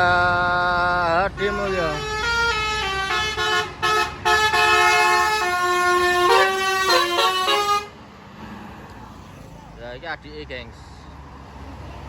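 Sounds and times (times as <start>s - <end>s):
musical bus air horn: 1.4s - 8.0s.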